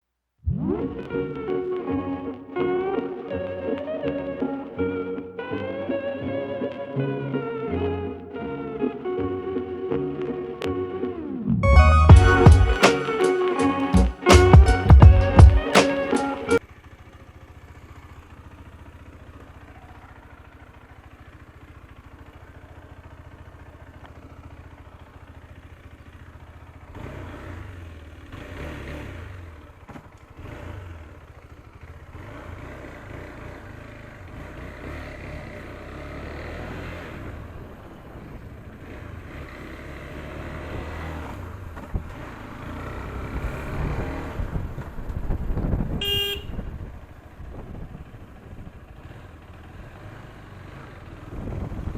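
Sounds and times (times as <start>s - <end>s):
motorcycle engine running: 0.9s - 51.9s
vehicle horn toot: 45.9s - 46.8s.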